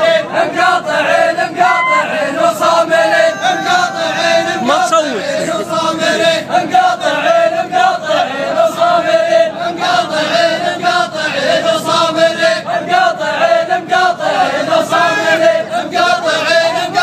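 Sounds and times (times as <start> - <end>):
group chanting in unison: 0.0 - 17.0.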